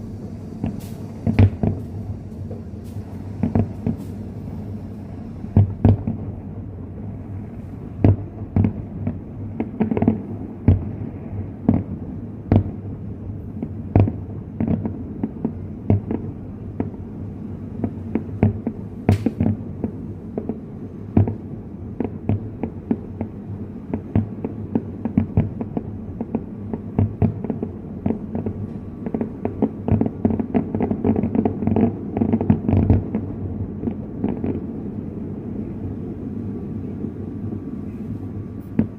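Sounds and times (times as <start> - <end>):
low rumble: 0.0 - 13.6, 33.0 - 38.9
fireworks booms and cracks: 0.0 - 38.9.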